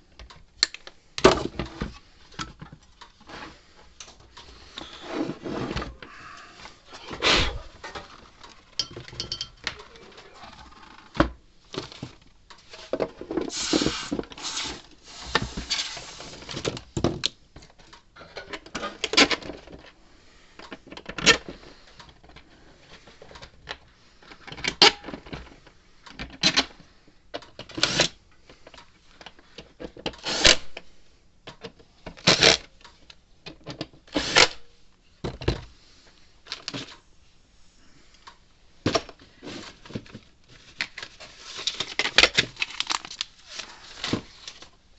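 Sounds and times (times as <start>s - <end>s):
scraping and rustling: 4.8s - 8.8s.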